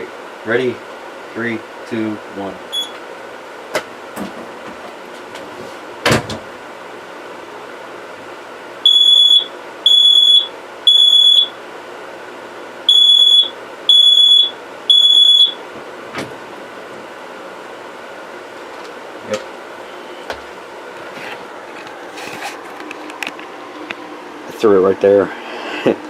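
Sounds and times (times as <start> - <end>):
smoke alarm high-pitched beeps: 2.7 - 3.0, 8.8 - 11.6, 12.9 - 15.6.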